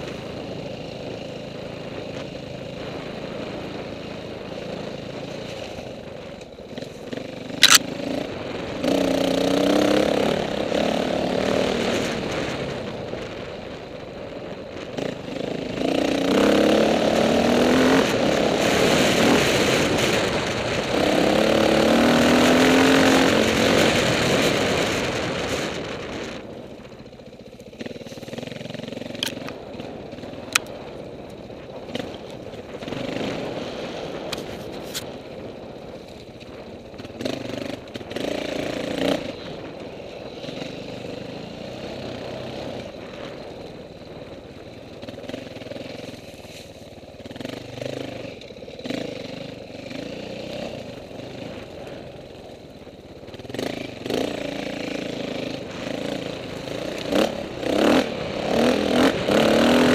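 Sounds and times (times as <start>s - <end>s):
motorcycle engine accelerating: 0.0s - 59.9s
sharp clicks: 7.6s - 7.9s, 29.1s - 29.6s.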